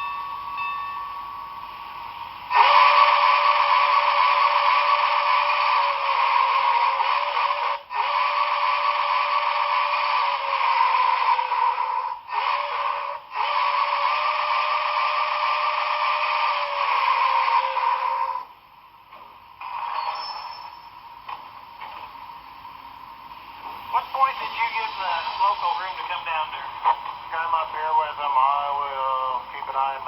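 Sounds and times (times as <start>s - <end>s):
model train steam whistle blasts: 0.0s - 18.6s, 19.6s - 21.0s.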